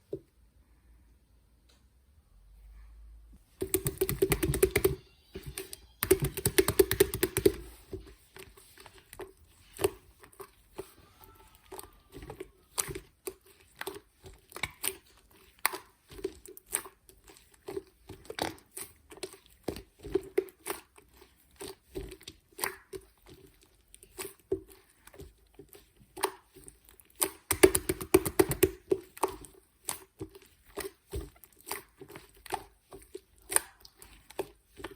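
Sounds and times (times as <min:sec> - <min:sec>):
slime squishing and popping: 0:03.6 - 0:07.8, 0:11.5 - 0:34.9.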